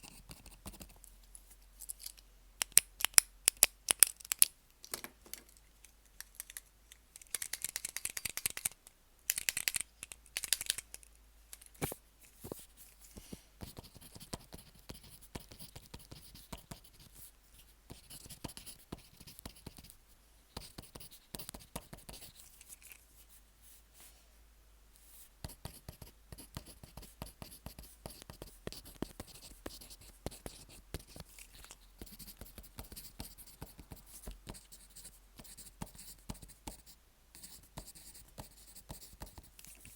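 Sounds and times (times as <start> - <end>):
pen writing on paper: 13.6 - 17.1, 17.9 - 19.9, 25.5 - 31.2, 32.0 - 39.5.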